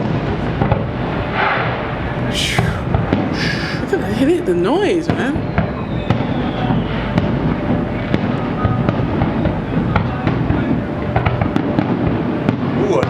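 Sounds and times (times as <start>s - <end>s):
fireworks booming and crackling: 6.1s - 12.8s.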